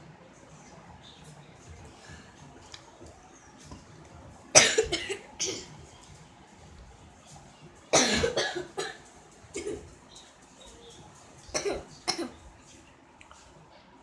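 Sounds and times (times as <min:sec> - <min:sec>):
person coughing hard: 0:04.6 - 0:05.7, 0:07.9 - 0:09.0, 0:09.6 - 0:09.9, 0:11.5 - 0:12.4.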